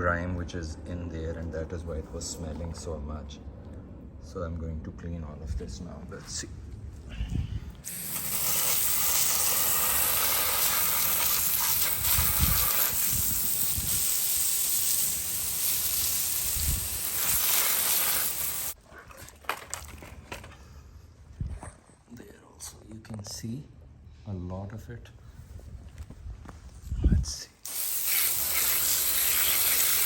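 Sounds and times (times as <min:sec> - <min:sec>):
pressure washer spraying: 0:07.9 - 0:18.8, 0:27.6 - 0:30.0.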